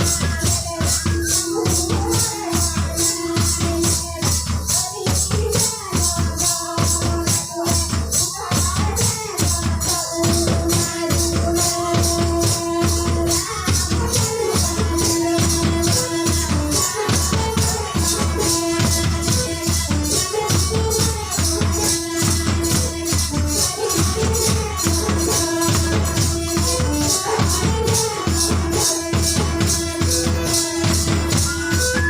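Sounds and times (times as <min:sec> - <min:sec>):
high rattling percussion: 0:00.0 - 0:32.0
held melodic notes: 0:31.4 - 0:32.0.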